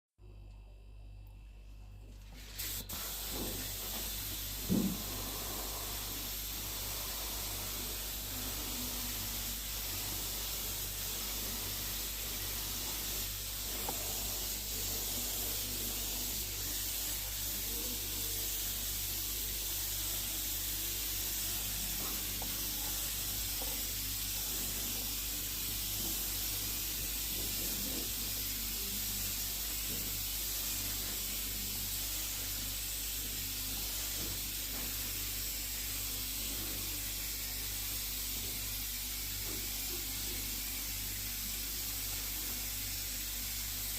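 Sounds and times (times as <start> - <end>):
paint spray gun hissing: 2.4 - 43.9.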